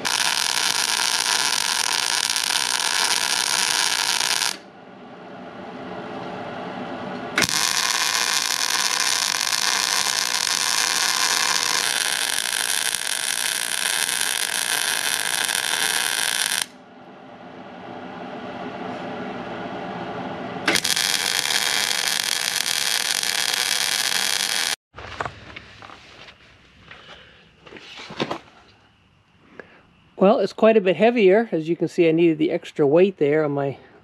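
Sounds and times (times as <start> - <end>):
welding arc crackling and sizzling: 0.0 - 4.7, 7.4 - 16.8, 20.6 - 24.8.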